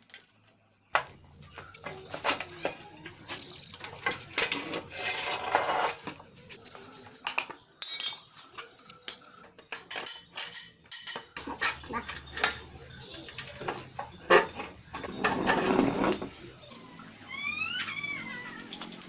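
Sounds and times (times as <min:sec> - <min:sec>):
scraping noise: 0:04.2 - 0:06.6, 0:13.2 - 0:16.5
metal tools clinking: 0:07.8 - 0:16.3.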